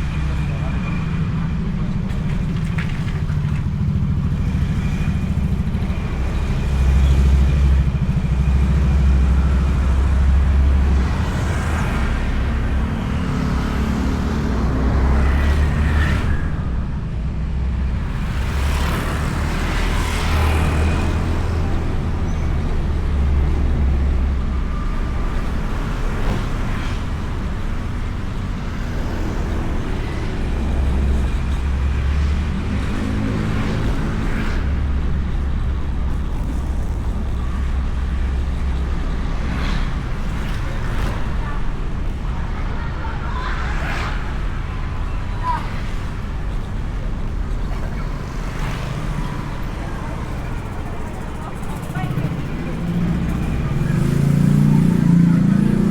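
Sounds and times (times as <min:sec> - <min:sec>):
road noise: 0:00.0 - 0:55.9
motorcycle engine rumble: 0:16.7 - 0:55.9.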